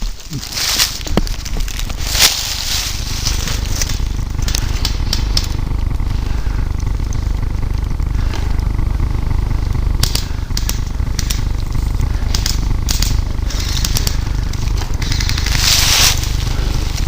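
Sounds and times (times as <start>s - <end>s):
footsteps crunching dry leaves: 0.0s - 5.1s, 14.6s - 17.0s
steady low rumble: 0.0s - 17.0s
brushing rustle: 1.9s - 3.8s, 15.4s - 17.0s.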